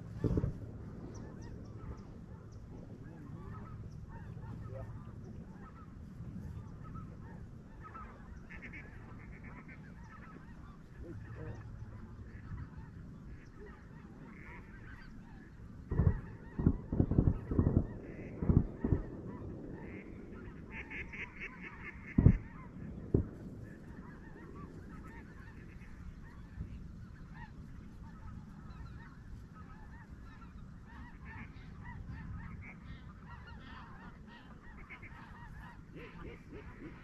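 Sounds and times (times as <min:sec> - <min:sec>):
low thumps: 0:00.0 - 0:01.9, 0:15.9 - 0:21.2, 0:22.1 - 0:25.5
geese honking: 0:00.0 - 0:37.0.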